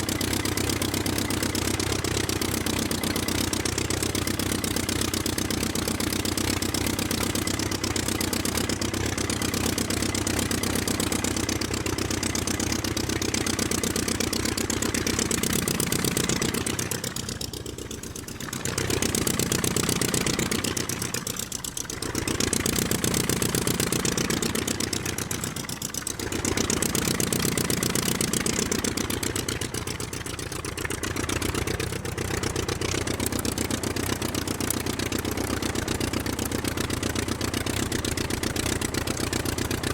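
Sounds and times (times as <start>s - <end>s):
piston aircraft engines droning: 8.6s - 37.0s.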